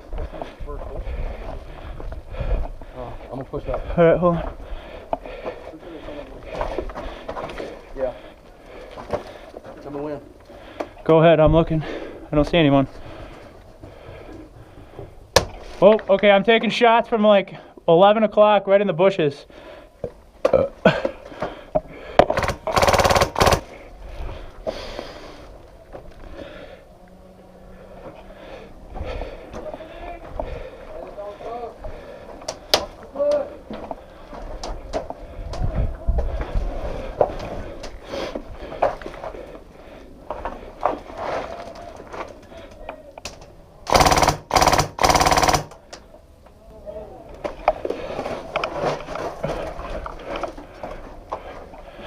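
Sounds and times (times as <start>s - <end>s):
airsoft gun full-auto burst: 22.4s - 23.7s, 43.9s - 45.8s
airsoft gun shots: 43.9s - 45.7s
faint clicks and rustles: 47.3s - 52.0s.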